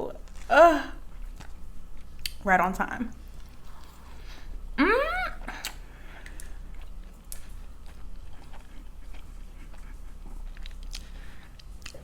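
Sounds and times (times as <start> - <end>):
person chewing close to microphone: 3.2 - 12.0
person humming mm: 4.8 - 5.7
wet mouth clicks and smacks: 5.6 - 6.5.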